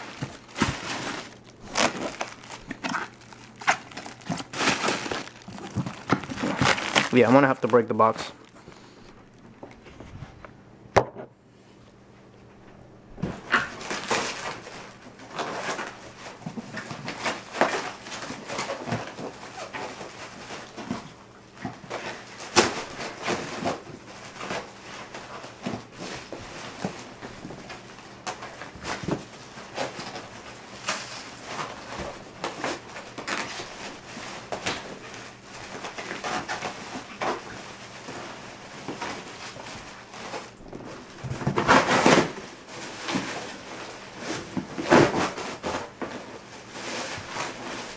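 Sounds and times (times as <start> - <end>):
cardboard tearing: 0.0 - 8.7, 21.7 - 47.9
packing scraping and rustling: 0.0 - 10.4, 13.2 - 47.9.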